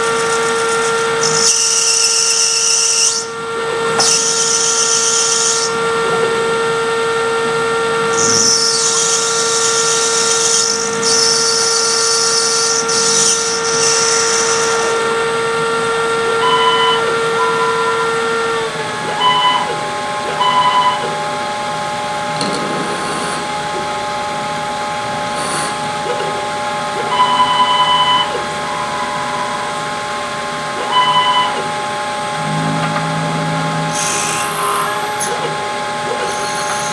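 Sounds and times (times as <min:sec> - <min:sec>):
short high motor whines: 0:00.0 - 0:06.6, 0:08.0 - 0:15.3, 0:16.2 - 0:21.2, 0:27.0 - 0:36.9
lathe spindle motor whine: 0:00.0 - 0:36.9.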